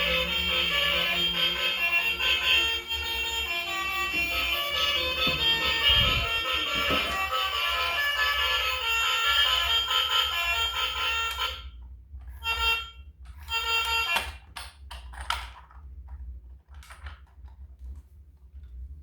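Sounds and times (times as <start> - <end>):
buzzy electronic toy alarm tone: 0.0 - 11.8, 12.4 - 14.4
plastic clicks and rattles: 14.1 - 18.7.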